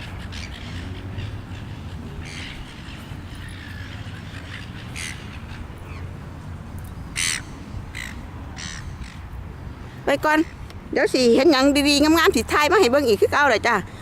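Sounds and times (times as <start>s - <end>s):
bird cawing: 0.0s - 6.1s, 7.1s - 9.3s.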